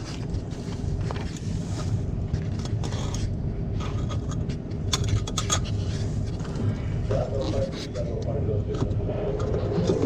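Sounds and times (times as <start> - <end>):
sharp clicks and scrapes: 0.0 - 6.6
low machinery hum: 0.0 - 10.0.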